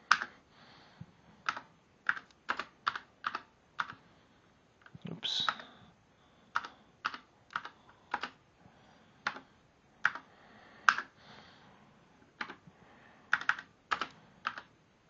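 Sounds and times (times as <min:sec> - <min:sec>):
keyboard key presses: 0:01.4 - 0:04.0, 0:06.5 - 0:08.4, 0:09.2 - 0:11.1, 0:12.4 - 0:12.6, 0:13.3 - 0:14.7.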